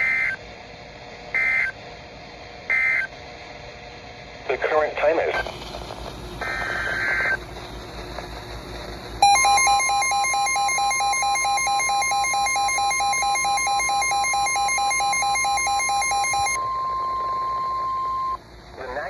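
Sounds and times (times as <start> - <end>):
rapid electronic alarm beeps: 1.4 - 1.7, 6.4 - 7.4, 9.2 - 18.4
low radio static: 4.4 - 9.6, 14.9 - 19.0
loud steady alert tone: 9.2 - 18.4.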